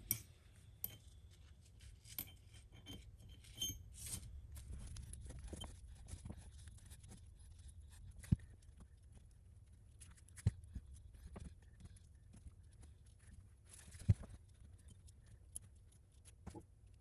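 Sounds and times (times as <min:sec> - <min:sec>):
small metallic clicks and taps: 0:00.0 - 0:01.2.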